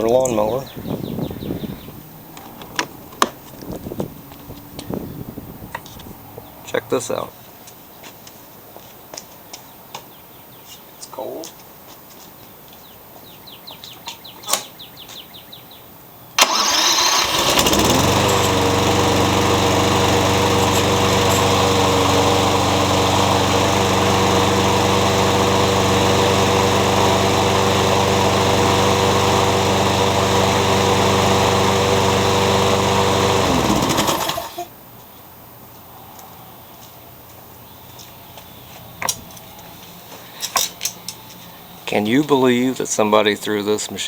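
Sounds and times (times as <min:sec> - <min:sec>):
lawn mower engine running: 0:00.0 - 0:06.5, 0:16.4 - 0:34.7
electric starter clicks: 0:16.4 - 0:26.9, 0:29.5 - 0:34.7.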